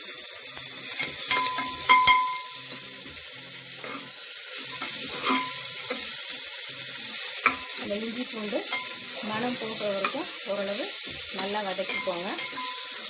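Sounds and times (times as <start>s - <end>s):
onions sizzling in hot oil: 0.0s - 13.0s
spoon striking metal pot: 1.0s - 2.8s, 7.4s - 7.9s, 8.6s - 9.0s, 10.0s - 10.3s, 11.0s - 13.0s.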